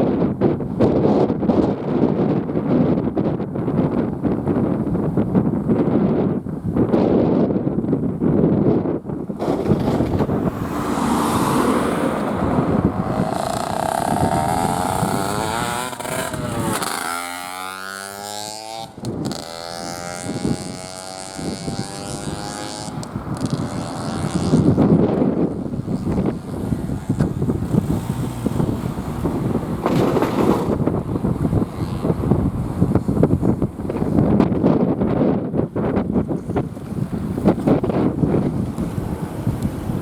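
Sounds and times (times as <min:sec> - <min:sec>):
wind buffeting microphone: 0:00.0 - 0:40.0
motor vehicle passing: 0:09.1 - 0:34.4, 0:36.5 - 0:40.0.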